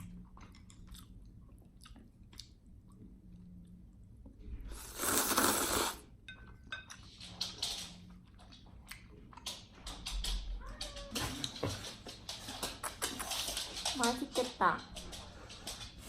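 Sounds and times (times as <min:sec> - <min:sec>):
utensils clinking against a bowl: 0:06.2 - 0:08.2.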